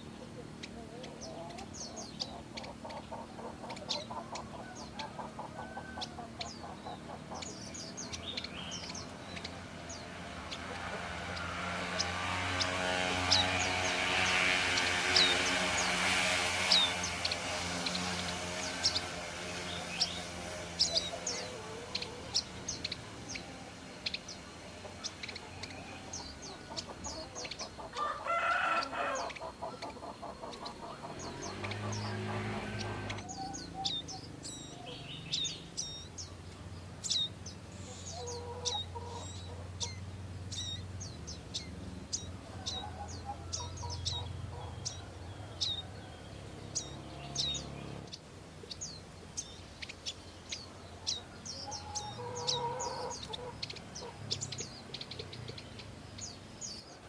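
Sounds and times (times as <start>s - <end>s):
hens clucking: 0.0s - 9.6s, 17.5s - 34.1s, 37.9s - 40.0s, 51.0s - 55.4s
rooster crowing: 4.2s - 6.7s, 27.1s - 30.3s, 42.4s - 46.5s, 51.1s - 53.5s.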